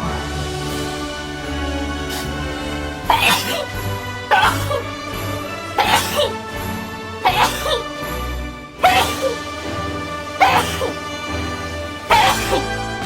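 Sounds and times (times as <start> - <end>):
sustained backing notes: 0.0 - 13.0
sneezes on a beat: 2.1 - 2.4, 3.0 - 5.0, 5.7 - 6.5, 7.2 - 8.2, 8.8 - 9.5, 10.4 - 11.1, 12.1 - 12.8.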